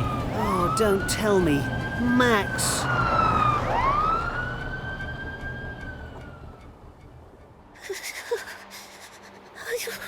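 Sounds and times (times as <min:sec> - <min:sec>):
siren-like wailing tone: 0:00.0 - 0:06.8.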